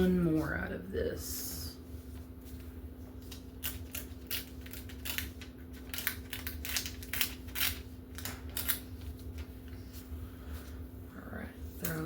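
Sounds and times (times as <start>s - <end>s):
paper crinkling and rustling: 2.0s - 10.1s.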